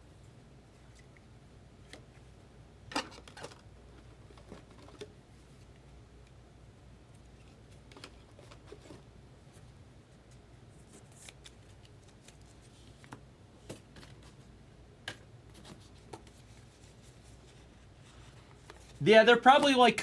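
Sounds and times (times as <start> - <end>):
trading cards being handled: 18.6 - 20.0.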